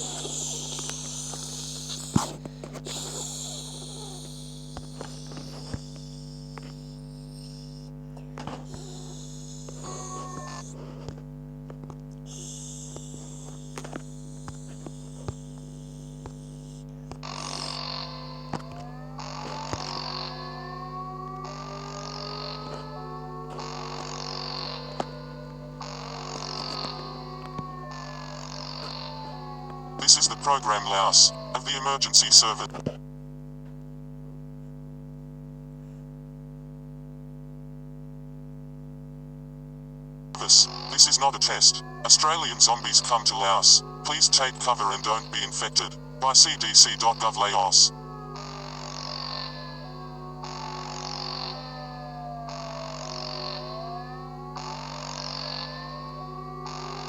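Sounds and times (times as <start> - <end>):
high hiss: 0.0 - 7.9
electrical hum: 0.0 - 57.0.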